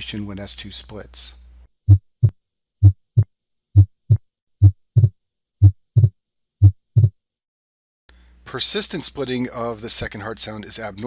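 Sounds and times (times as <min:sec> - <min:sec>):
heartbeat: 0:01.9 - 0:07.2.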